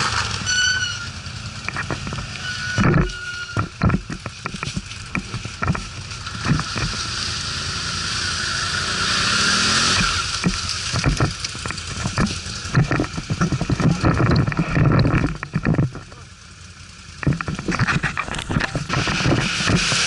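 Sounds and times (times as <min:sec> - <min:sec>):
atv engine running: 0:00.0 - 0:20.0
irregular knocks and bumps: 0:01.7 - 0:07.0, 0:10.0 - 0:16.1, 0:17.2 - 0:20.0.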